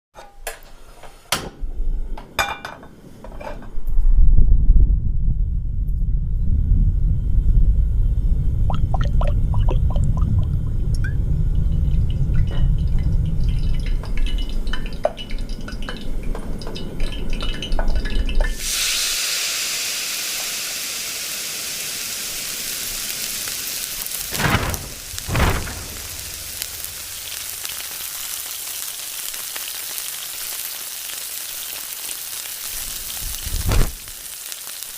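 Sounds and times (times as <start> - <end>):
low rumble: 3.8 - 14.4, 24.4 - 28.4
rain-like hiss: 8.5 - 34.9
small drips and clicks: 8.7 - 18.6.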